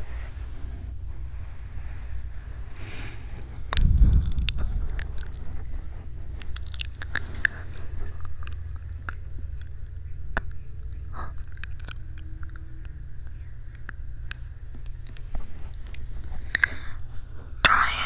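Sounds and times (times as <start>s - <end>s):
steady low hum: 0.0s - 18.0s
wet mouth clicks and smacks: 3.6s - 18.0s.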